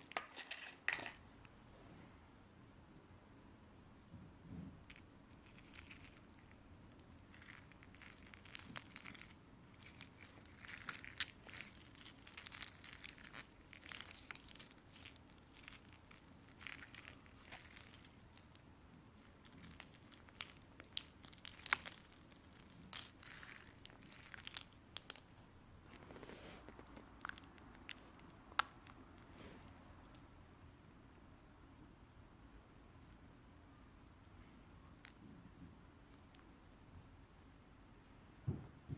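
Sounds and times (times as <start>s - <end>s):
slime popping: 4.8s - 25.4s
slime clicking and crackling: 4.8s - 26.0s, 26.7s - 29.3s.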